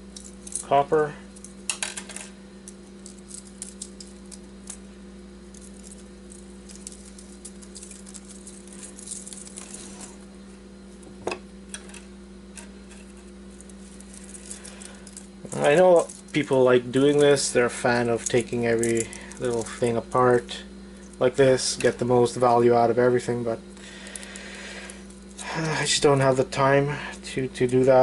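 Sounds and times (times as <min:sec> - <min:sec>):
wire rustling and ticking: 0:00.0 - 0:10.3, 0:11.7 - 0:22.6
steady low hum: 0:00.0 - 0:28.0.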